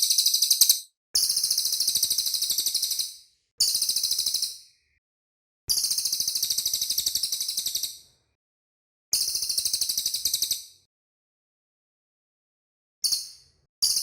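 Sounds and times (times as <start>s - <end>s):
bird high-pitched trills: 0.0s - 0.9s.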